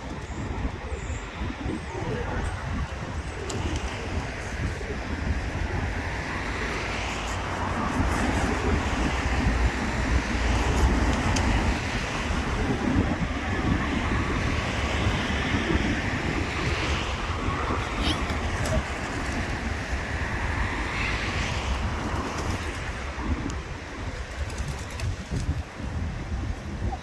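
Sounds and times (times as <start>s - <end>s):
pigeon wings flapping: 2.1s - 5.4s, 16.8s - 20.7s, 21.3s - 25.7s.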